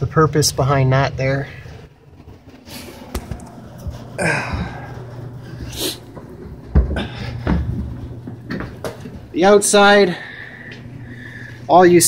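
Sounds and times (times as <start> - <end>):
steady low hum: 0.0 - 12.0
handling knocks and rustling: 6.1 - 9.3.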